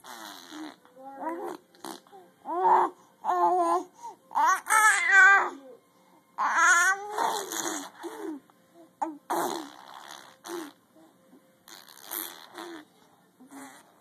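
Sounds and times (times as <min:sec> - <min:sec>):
person making mouth fart noises: 0:00.0 - 0:02.1, 0:07.3 - 0:08.0, 0:09.0 - 0:10.8, 0:11.7 - 0:12.9, 0:13.5 - 0:14.0.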